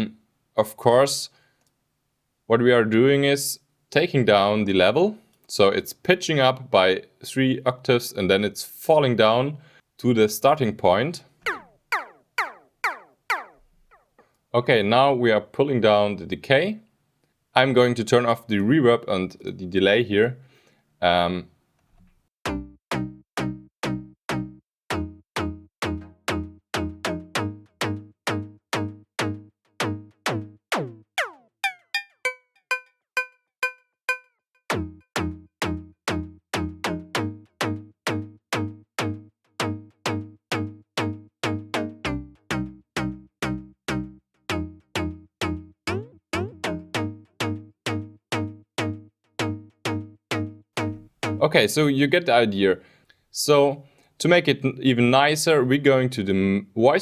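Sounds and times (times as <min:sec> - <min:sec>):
falling pitch sweep: 0:11.4 - 0:14.1
synthesizer pluck notes: 0:11.4 - 0:14.1, 0:30.8 - 0:35.3, 0:45.9 - 0:47.6.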